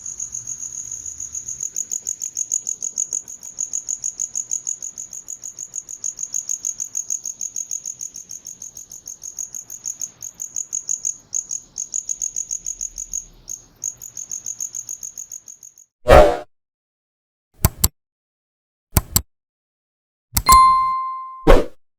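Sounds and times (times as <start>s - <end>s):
cricket chirping: 0.0s - 15.9s.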